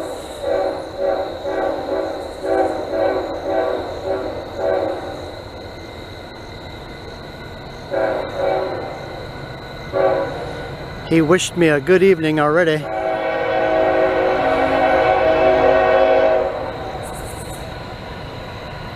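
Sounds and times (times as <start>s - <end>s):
train low rumble: 0.0s - 18.9s
locomotive horn short blasts: 12.8s - 16.6s.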